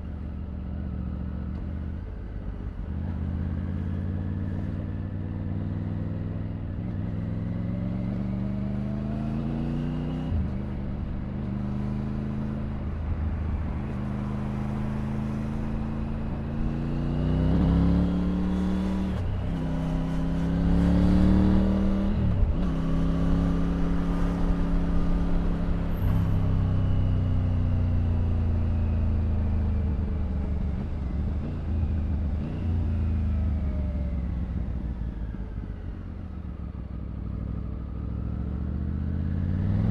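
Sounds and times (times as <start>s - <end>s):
motorcycle engine revving: 13.8s - 34.2s, 37.2s - 39.9s.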